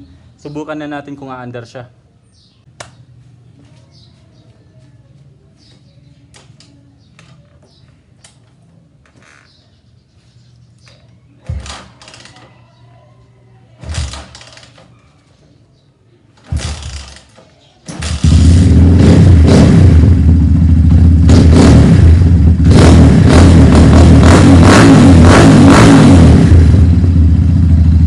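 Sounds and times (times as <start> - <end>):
motorcycle engine cranking: 10.8 - 12.6, 13.8 - 15.0, 16.3 - 19.7
motorcycle engine revving: 16.4 - 28.0.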